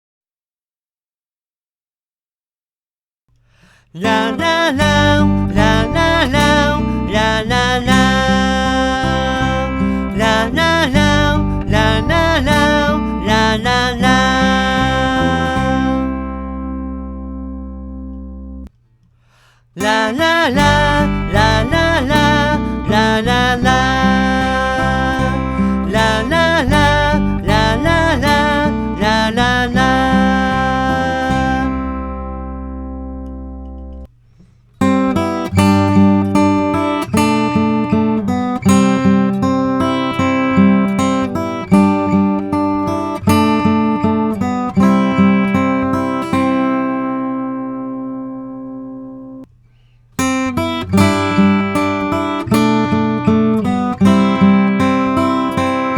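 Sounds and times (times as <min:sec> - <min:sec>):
wordless sung melody: 0:03.4 - 0:34.1, 0:34.8 - 0:49.5, 0:50.2 - 0:55.9
strummed acoustic guitar: 0:03.4 - 0:55.9
bass line: 0:04.8 - 0:18.7, 0:20.5 - 0:34.1.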